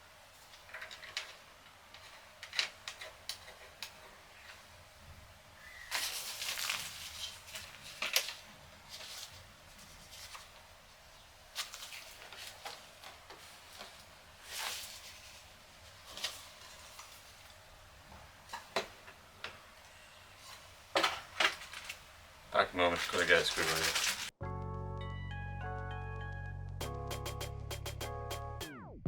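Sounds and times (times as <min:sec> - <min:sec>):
packaging rustling: 0:05.9 - 0:10.7, 0:11.5 - 0:17.4, 0:20.5 - 0:22.0, 0:22.8 - 0:24.4.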